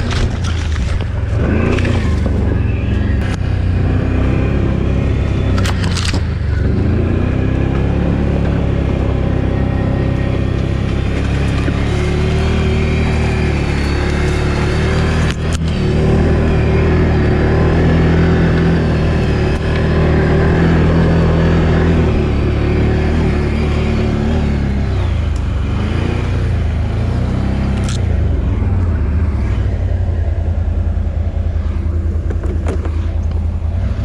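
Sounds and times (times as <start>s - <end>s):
atv engine running: 0.0s - 34.0s.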